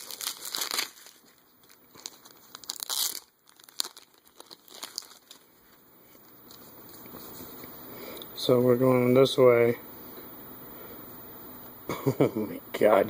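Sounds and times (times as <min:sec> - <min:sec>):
packaging crinkling and tearing: 0:00.0 - 0:05.8.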